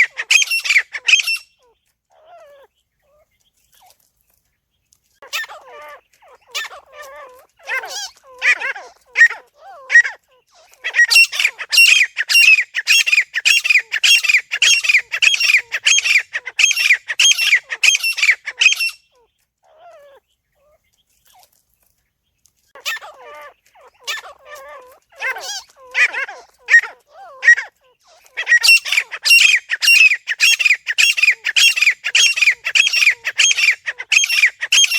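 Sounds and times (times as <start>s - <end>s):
francolin shrill calls: 0.0s - 1.8s, 7.7s - 19.2s, 22.8s - 34.9s.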